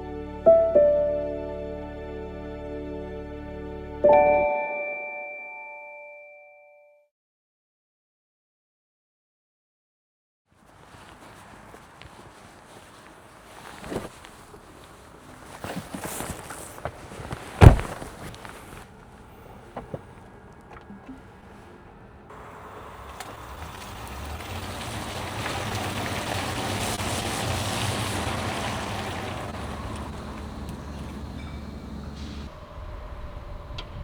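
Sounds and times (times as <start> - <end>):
loud thump: 17.6 - 18.2
vehicle passing with low hum: 17.6 - 34.0.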